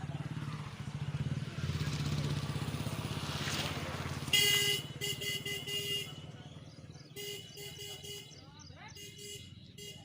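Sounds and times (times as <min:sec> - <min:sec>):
vehicle horn blasts: 0:04.3 - 0:06.3, 0:07.2 - 0:10.0.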